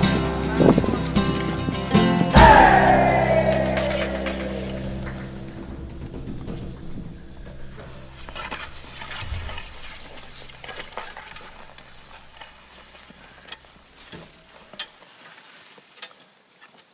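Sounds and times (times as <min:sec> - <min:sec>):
low song note: 0:02.4 - 0:08.1
crackling rustling noise: 0:14.4 - 0:16.9.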